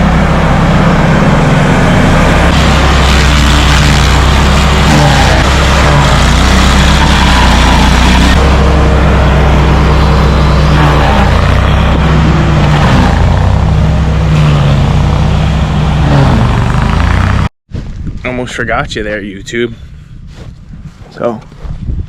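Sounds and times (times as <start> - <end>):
large engine running: 0.0 - 17.5.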